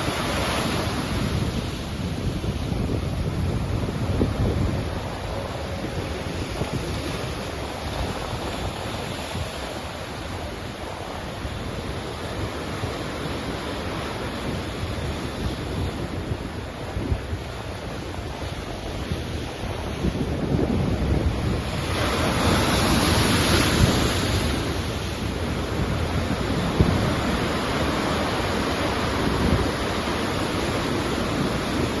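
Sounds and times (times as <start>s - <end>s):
sea waves washing on shore: 0.0s - 32.0s
wind rumbling on microphone: 0.0s - 32.0s.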